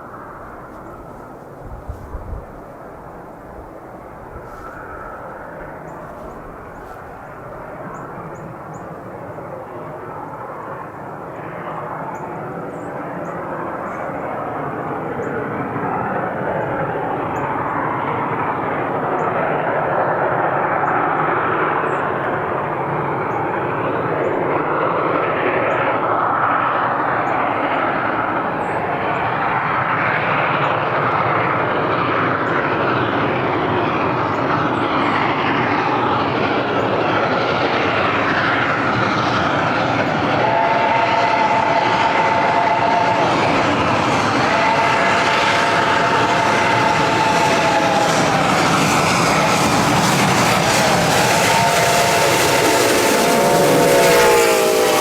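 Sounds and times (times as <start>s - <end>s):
steam train running: 0.0s - 55.0s
chime steam whistle blowing: 44.4s - 48.7s, 50.4s - 55.0s.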